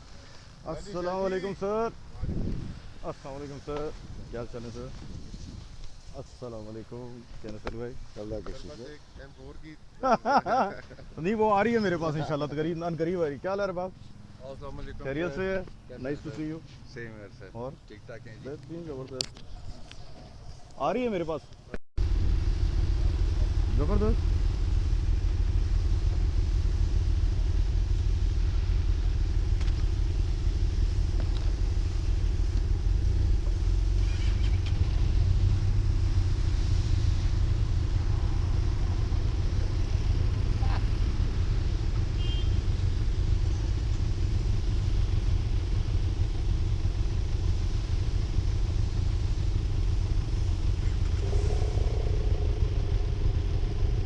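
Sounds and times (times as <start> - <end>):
motorcycle engine running steadily: 22.0 - 35.6, 38.7 - 54.0.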